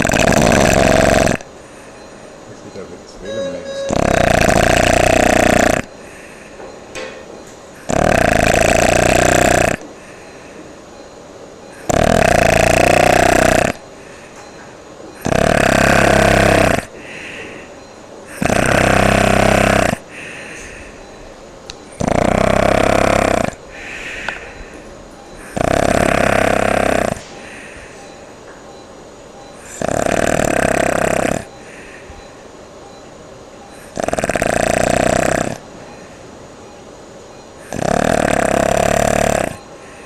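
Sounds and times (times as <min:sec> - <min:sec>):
person snoring: 0:00.0 - 0:01.5, 0:03.9 - 0:06.5, 0:07.8 - 0:10.2, 0:11.8 - 0:13.9, 0:15.2 - 0:17.3, 0:18.3 - 0:20.9, 0:22.0 - 0:24.6, 0:25.4 - 0:27.6, 0:29.6 - 0:32.0, 0:33.8 - 0:35.6, 0:37.6 - 0:40.0
soft breaths: 0:00.0 - 0:03.0, 0:04.2 - 0:28.8, 0:29.4 - 0:34.1, 0:37.6 - 0:40.0.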